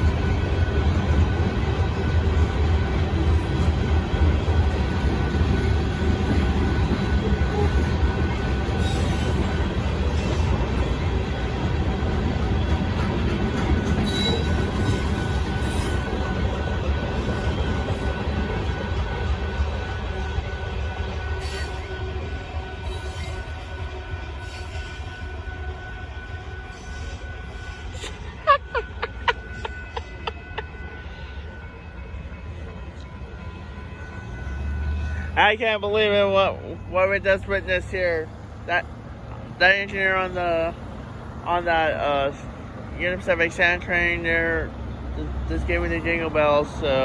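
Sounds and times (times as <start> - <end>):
freight train wheels rumbling on rail: 0.0 - 47.0
high wheel squeal: 5.6 - 11.1, 13.8 - 18.6, 21.3 - 26.0, 26.6 - 31.5
wheel screeches: 13.8 - 16.0.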